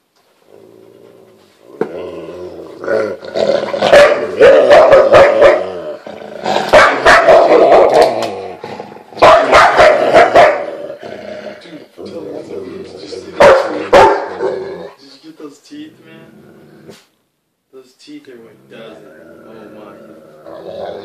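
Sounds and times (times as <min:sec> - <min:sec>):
animals snarling and growling: 0:00.5 - 0:15.0, 0:15.9 - 0:17.1, 0:18.5 - 0:21.0.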